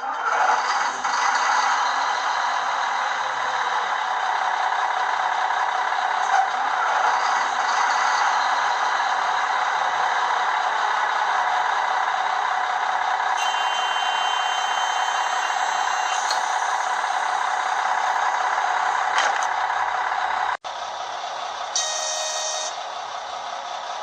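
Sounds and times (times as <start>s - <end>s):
diesel railcar sound from small speaker: 0.0s - 24.0s
high steady tone: 13.4s - 18.2s.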